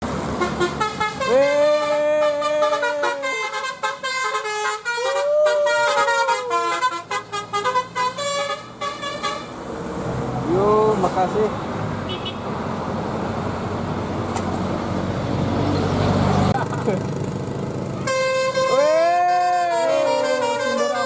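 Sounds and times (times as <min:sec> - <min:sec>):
musical bus horn playing a tune: 0:00.4 - 0:09.6, 0:18.0 - 0:21.0.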